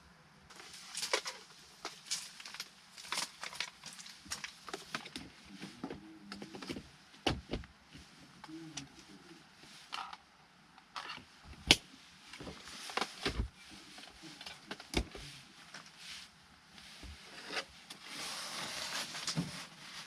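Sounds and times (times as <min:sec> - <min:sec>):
rustling: 0:00.5 - 0:06.9, 0:11.0 - 0:20.0.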